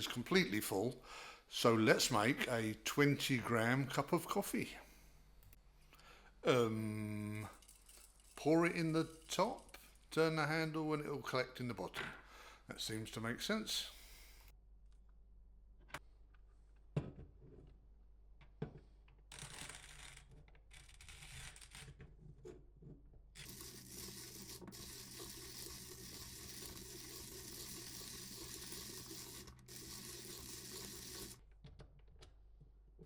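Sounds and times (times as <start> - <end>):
hand grinder crunching coffee beans: 23.4 - 31.4.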